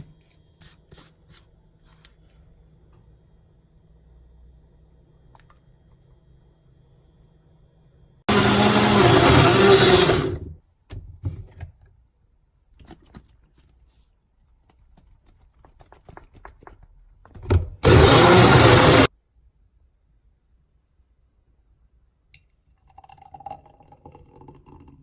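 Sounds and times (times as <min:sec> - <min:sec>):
blender blending: 0:08.3 - 0:10.5, 0:17.8 - 0:19.1.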